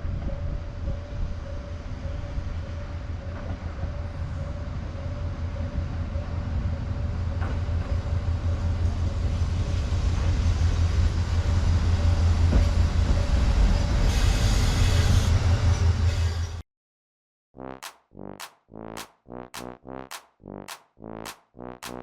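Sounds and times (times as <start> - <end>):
diesel railcar engine rumble: 0.0 - 16.6.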